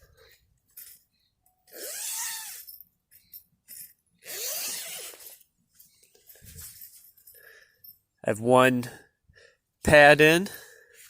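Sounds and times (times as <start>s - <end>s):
tent zipper rasping: 1.7s - 2.7s, 4.3s - 5.4s.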